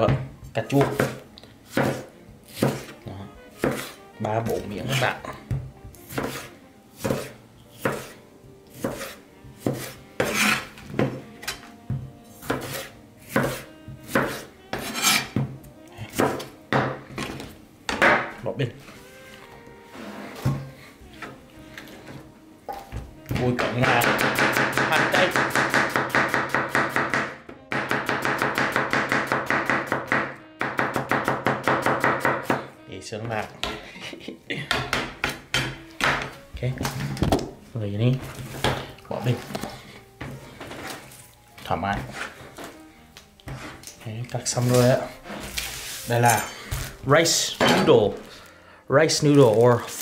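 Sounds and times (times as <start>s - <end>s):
knife chopping on cutting board: 0.0s - 3.0s, 3.6s - 18.4s, 23.3s - 32.7s
knife cutting on wooden board: 0.8s - 3.0s, 3.6s - 5.0s, 6.0s - 11.6s, 12.4s - 15.5s, 43.4s - 44.0s.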